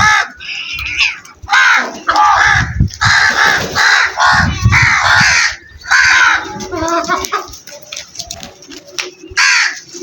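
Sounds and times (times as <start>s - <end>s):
crows cawing: 0.0s - 6.5s, 9.4s - 9.9s.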